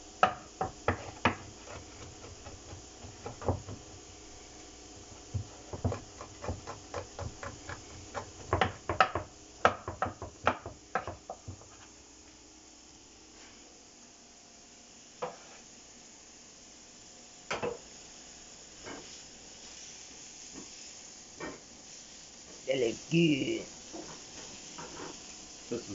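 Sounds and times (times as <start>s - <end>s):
knife chopping on cutting board: 0.2s - 3.9s, 5.3s - 11.7s.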